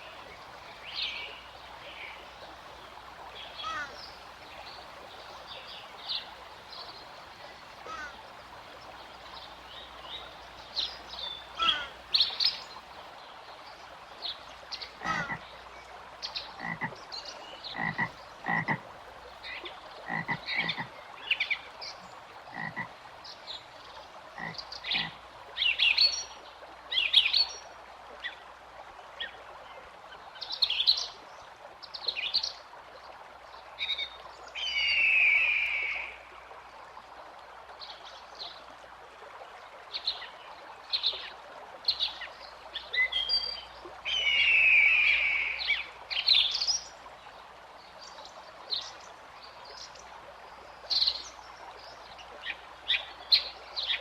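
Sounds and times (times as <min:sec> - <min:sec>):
frogs croaking: 0:00.0 - 0:05.0, 0:05.8 - 0:13.0, 0:14.8 - 0:23.2, 0:24.1 - 0:25.7
faint background hiss: 0:00.0 - 0:54.0.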